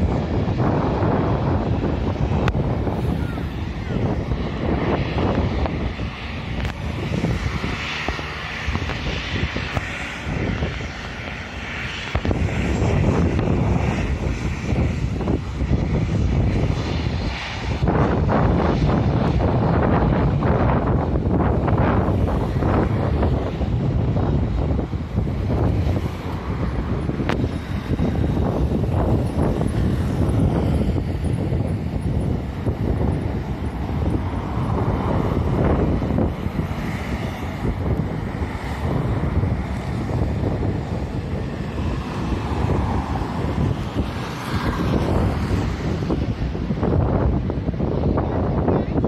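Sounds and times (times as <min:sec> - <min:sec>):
jet airliner engines rumbling: 0:00.0 - 0:49.0
wind buffeting microphone: 0:00.0 - 0:49.0.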